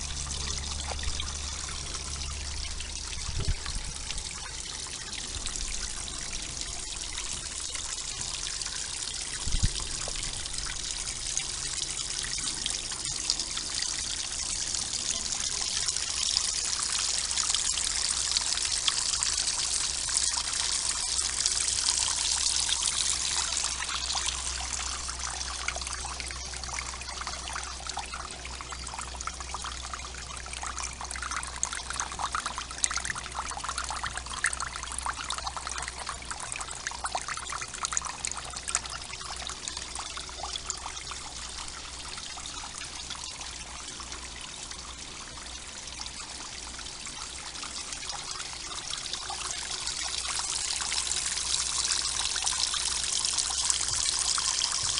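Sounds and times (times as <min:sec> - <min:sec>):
water splashing into pond: 0:00.0 - 0:54.9.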